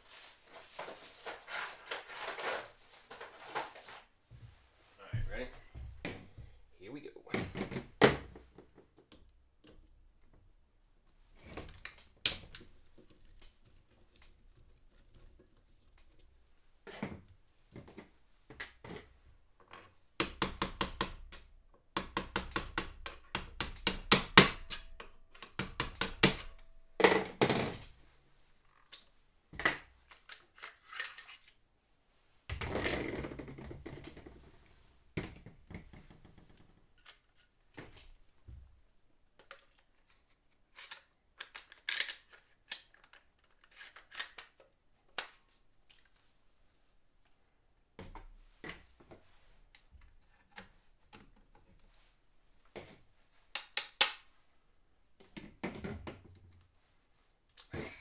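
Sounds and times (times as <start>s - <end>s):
rattling clatter of parts: 0.2s - 4.1s.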